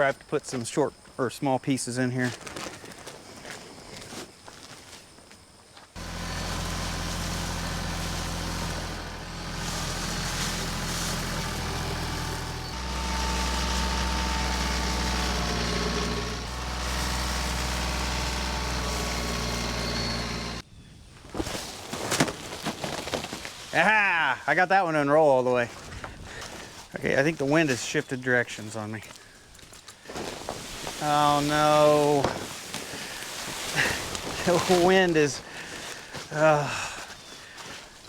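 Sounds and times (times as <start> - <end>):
tractor engine running: 6.0 - 20.6.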